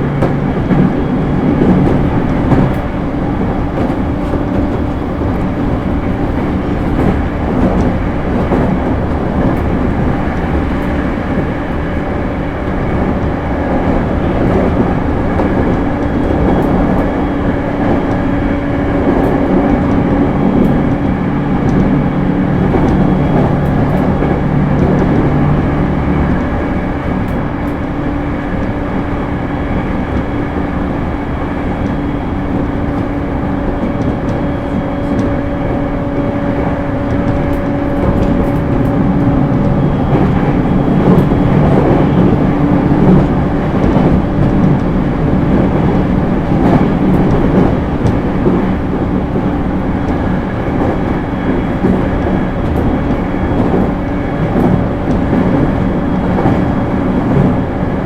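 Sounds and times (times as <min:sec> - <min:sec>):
train wheels rumbling on rails: 0:00.0 - 0:58.0
faint track ticks: 0:00.2 - 0:22.0, 0:31.8 - 0:58.0.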